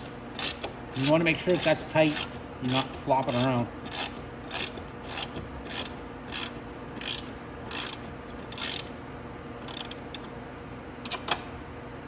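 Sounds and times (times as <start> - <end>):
socket ratchet clicking: 0.3 - 8.9, 9.7 - 10.3.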